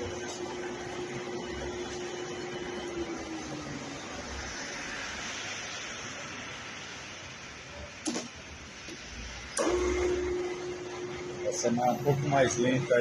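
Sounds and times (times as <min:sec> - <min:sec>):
drill press motor whir: 0:00.0 - 0:04.5, 0:09.6 - 0:13.0.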